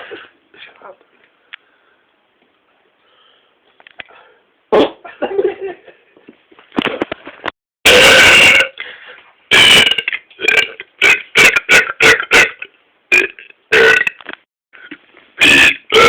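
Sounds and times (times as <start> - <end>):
person belching: 7.9 - 8.8, 9.5 - 14.2, 14.8 - 16.0.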